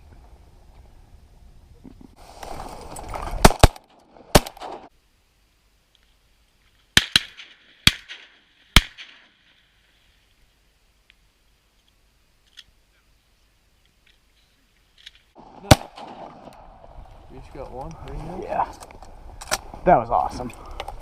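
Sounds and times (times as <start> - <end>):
shotgun shots: 3.4 - 4.9, 7.0 - 9.4, 15.4 - 16.8.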